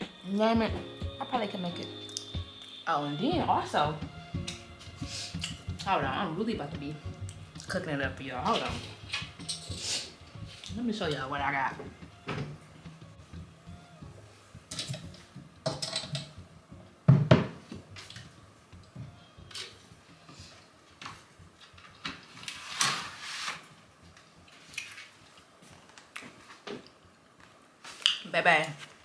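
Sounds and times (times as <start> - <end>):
rustling: 3.2 - 16.7, 17.5 - 26.7
dishes and cupboards clattering: 14.7 - 16.4.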